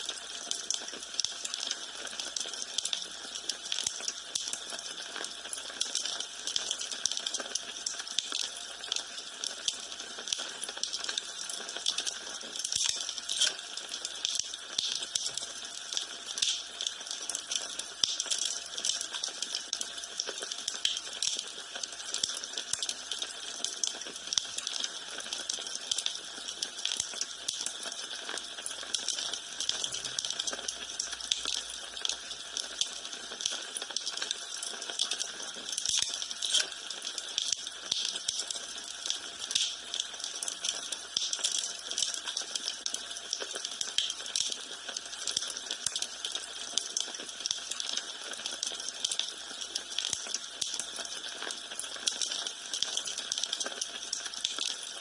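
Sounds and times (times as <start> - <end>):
wood fire crackling: 10.8 - 21.6, 29.3 - 44.5.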